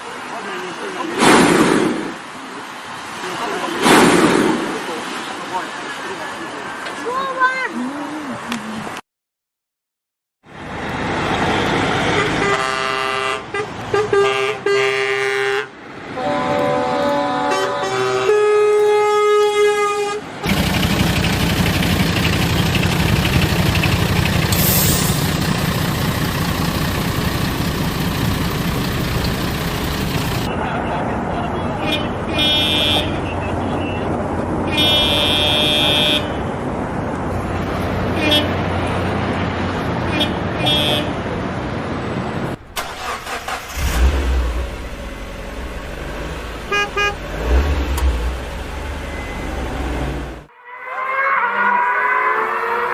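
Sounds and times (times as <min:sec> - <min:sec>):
city street traffic: 0:00.0 - 0:09.0, 0:10.4 - 0:52.9
truck horn blaring: 0:12.1 - 0:26.0, 0:31.9 - 0:33.2, 0:34.7 - 0:36.4, 0:38.2 - 0:38.6, 0:40.1 - 0:41.2, 0:46.7 - 0:47.4, 0:49.0 - 0:52.9
truck engine running: 0:20.4 - 0:30.5, 0:42.9 - 0:50.5
brief hiss: 0:24.5 - 0:25.4
car horn toots: 0:31.9 - 0:33.2, 0:34.7 - 0:36.4, 0:46.7 - 0:47.2.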